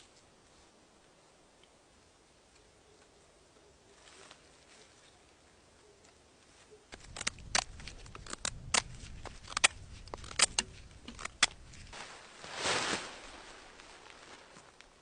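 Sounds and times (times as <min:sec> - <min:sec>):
brush rustling: 0:03.9 - 0:05.5, 0:06.1 - 0:15.0
dry sticks snapping: 0:06.9 - 0:12.0.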